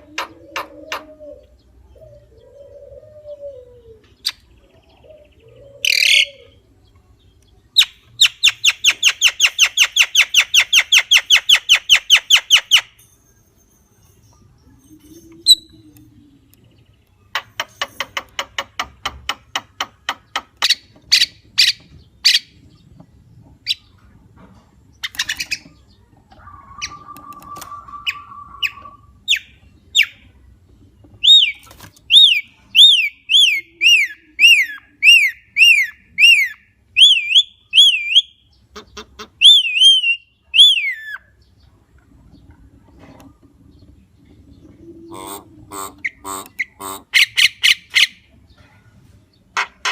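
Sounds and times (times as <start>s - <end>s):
bird calling with rattling clicks: 15.0s - 21.9s, 25.0s - 25.8s, 27.0s - 28.2s, 45.8s - 46.8s.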